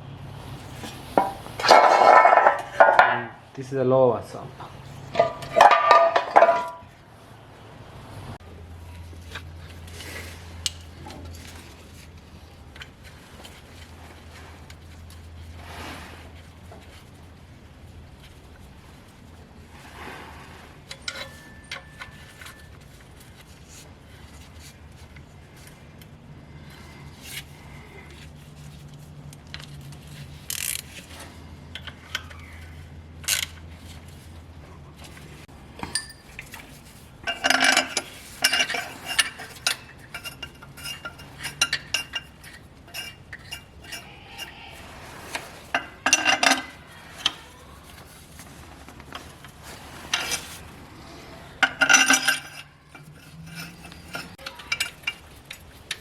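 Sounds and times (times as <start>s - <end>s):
metal tools knocking and clinking: 1.2s - 3.3s, 5.1s - 6.9s, 20.9s - 22.8s, 35.8s - 44.6s, 45.3s - 47.4s, 51.6s - 56.0s
ringing metallic clatter: 5.1s - 6.9s, 20.9s - 23.0s, 35.8s - 47.5s, 51.6s - 56.0s.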